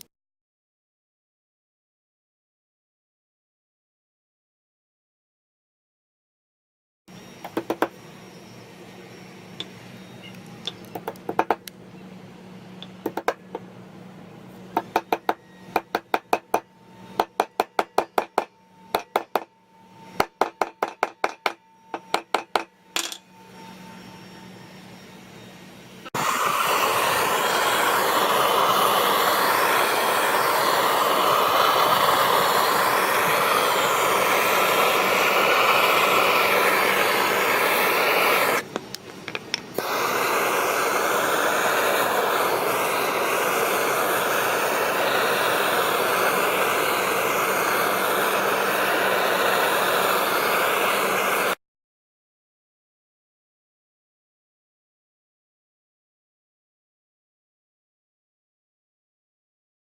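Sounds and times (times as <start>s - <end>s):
hammer striking anvil: 20.2s - 23.3s
loud rushing hiss: 26.1s - 38.7s, 39.7s - 51.6s.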